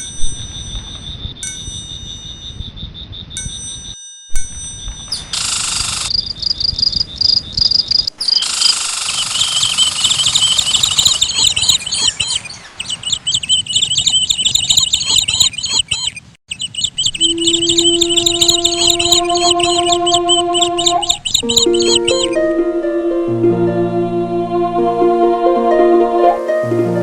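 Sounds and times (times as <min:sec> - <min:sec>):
birds chirping rapidly: 0:05.9 - 0:22.4.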